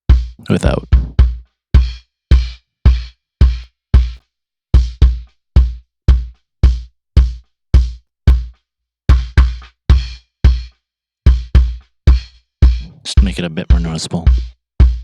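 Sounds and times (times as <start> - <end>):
kick drum thuds: 0.6 - 1.3.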